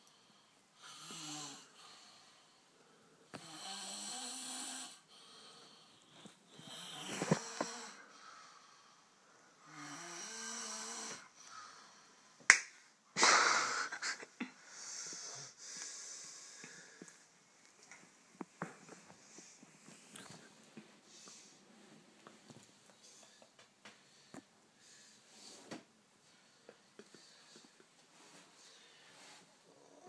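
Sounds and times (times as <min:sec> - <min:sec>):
people snoring: 0:00.8 - 0:01.8, 0:03.4 - 0:08.2, 0:09.6 - 0:11.3.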